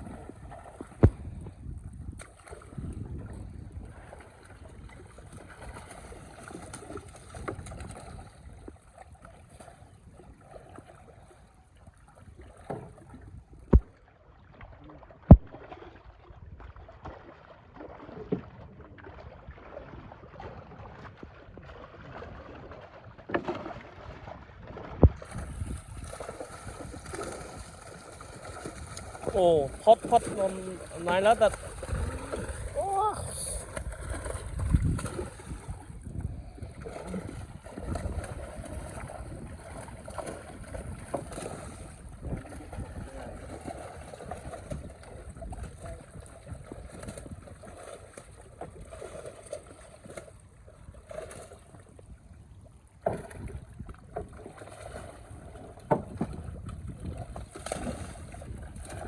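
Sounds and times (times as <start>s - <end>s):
water sloshing around a boat: 0.0s - 59.0s.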